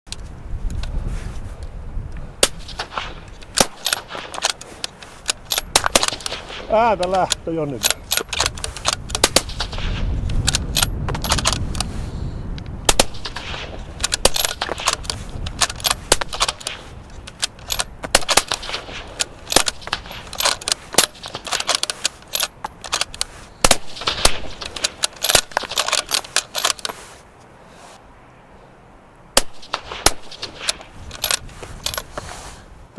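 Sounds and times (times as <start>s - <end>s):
suppressed rifle gunshots: 5.7s - 6.7s, 9.2s - 10.1s, 12.9s - 15.0s, 18.1s - 20.2s, 23.6s - 25.6s, 29.4s - 30.8s.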